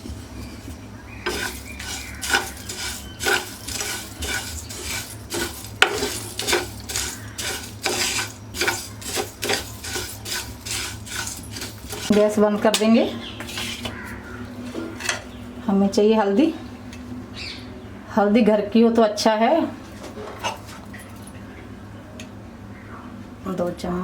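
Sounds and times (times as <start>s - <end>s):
utensil scraping spices in a pan: 0.0s - 15.3s.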